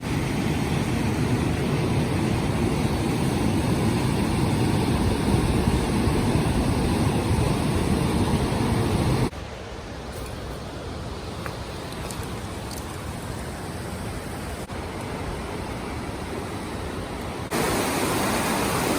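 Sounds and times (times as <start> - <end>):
waterfall rushing: 13.3 - 18.9.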